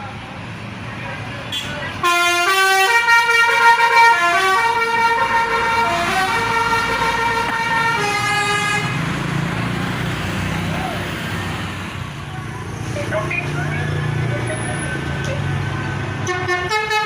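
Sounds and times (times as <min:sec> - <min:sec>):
bus horn playing a melody: 0:01.5 - 0:09.0, 0:16.2 - 0:17.0.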